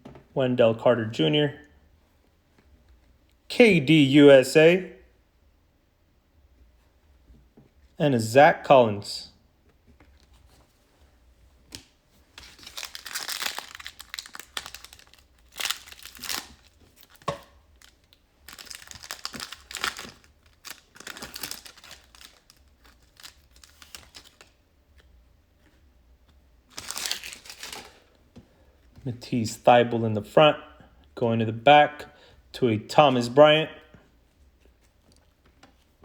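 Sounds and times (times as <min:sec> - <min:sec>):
plastic wrapper tearing and crinkling: 0:12.4 - 0:24.6, 0:26.7 - 0:28.1.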